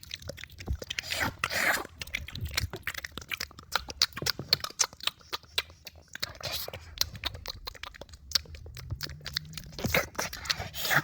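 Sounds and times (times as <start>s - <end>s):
lip smacking: 0.0s - 11.0s
wet chewing and mouth clicks: 0.0s - 11.0s.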